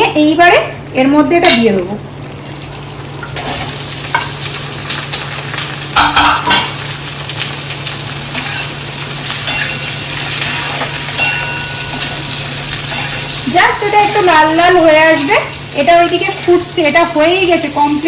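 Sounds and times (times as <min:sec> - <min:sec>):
vegetables sizzling in hot fat: 0:01.1 - 0:18.0
spoon knocking against pan: 0:06.0 - 0:06.7.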